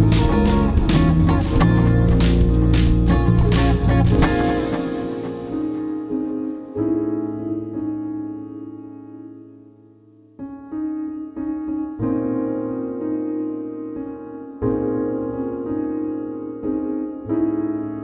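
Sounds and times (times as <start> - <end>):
keyboard chords ringing: 0.0 - 7.8.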